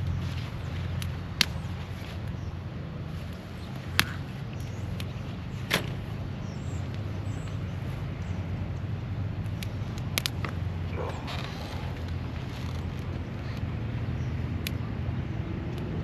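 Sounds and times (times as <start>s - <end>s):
low machine hum: 0.0s - 16.0s
sharp clicks: 8.2s - 13.7s.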